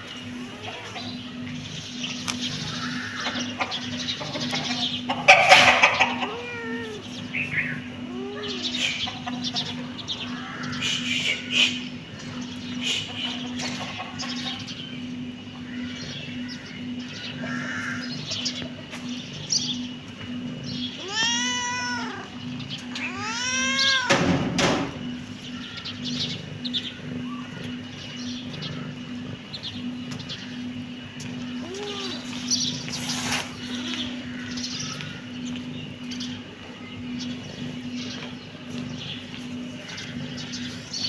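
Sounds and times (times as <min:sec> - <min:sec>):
steady low hum: 0:00.0 - 0:41.0
kitten meowing: 0:06.0 - 0:07.1, 0:08.0 - 0:09.0, 0:21.0 - 0:24.4, 0:31.6 - 0:32.3.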